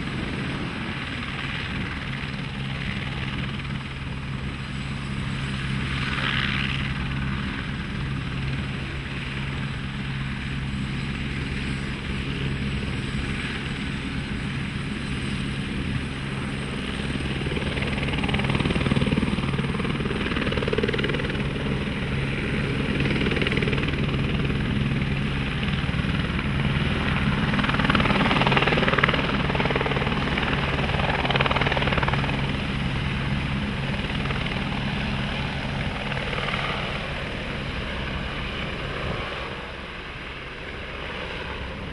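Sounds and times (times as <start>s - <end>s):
helicopter rotor chop and engine hum: 0.0s - 41.9s.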